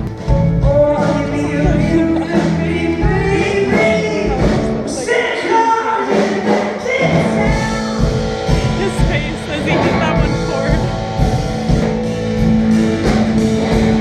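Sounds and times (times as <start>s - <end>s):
pop-rock band playing: 0.0s - 14.0s
steady drum beat: 0.0s - 14.0s
lead singer singing: 0.1s - 10.8s.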